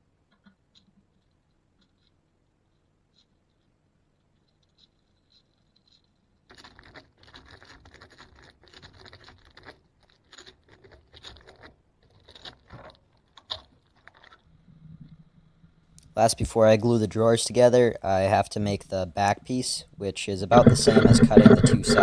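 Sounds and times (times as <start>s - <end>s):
hand tool scraping wood: 20.5s - 22.0s.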